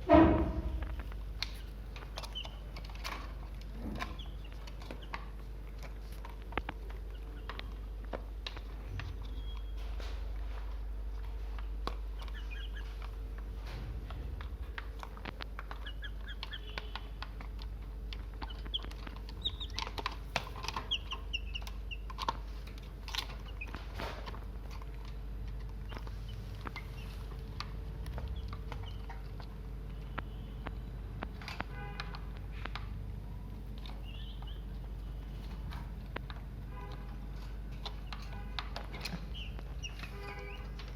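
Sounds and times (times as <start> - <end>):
chickens chirping: 0.0 - 9.7, 11.6 - 29.9, 33.4 - 36.1, 37.4 - 40.9
chickens pecking: 0.0 - 40.9.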